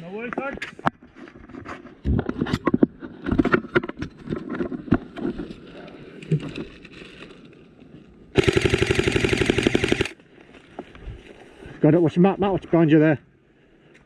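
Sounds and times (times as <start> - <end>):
airsoft gun full-auto fire: 8.4 - 10.2.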